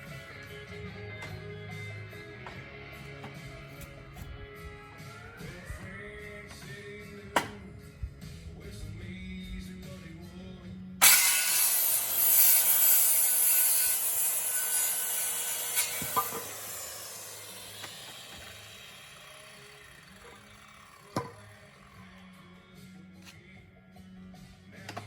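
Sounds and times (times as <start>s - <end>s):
power saw cutting wood: 0.0s - 7.7s, 11.0s - 23.6s.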